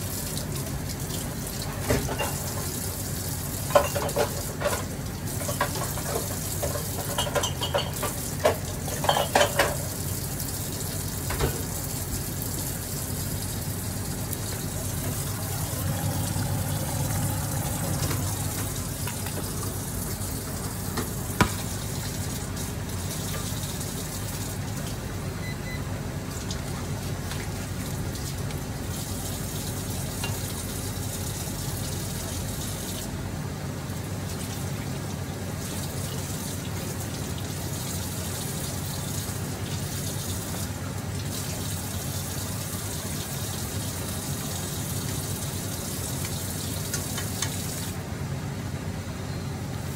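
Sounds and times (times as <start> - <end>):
meat sizzling and bubbling in a pan: 0.0 - 20.6.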